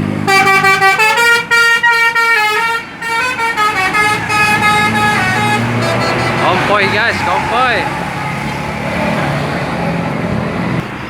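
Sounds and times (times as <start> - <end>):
multi-tone bus horn tune: 0.2 - 8.5.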